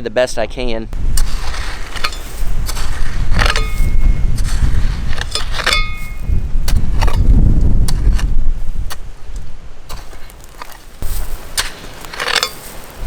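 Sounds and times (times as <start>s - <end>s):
metal rake scraping rubble: 1.0s - 7.3s, 9.9s - 13.0s.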